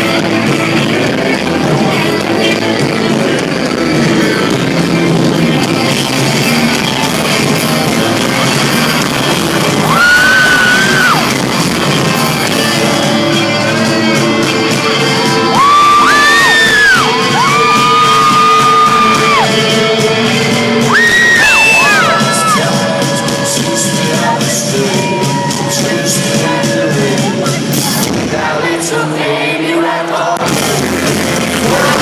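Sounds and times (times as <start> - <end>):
live rock band playing: 0.0 - 28.4, 30.4 - 32.0
crowd yelling: 0.5 - 32.0.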